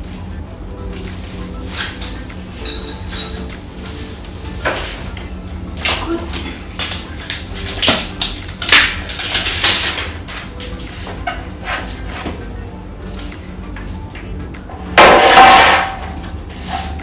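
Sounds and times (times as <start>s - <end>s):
rustling clatter: 0.0s - 17.0s
hard objects clinking and knocking: 0.9s - 12.5s.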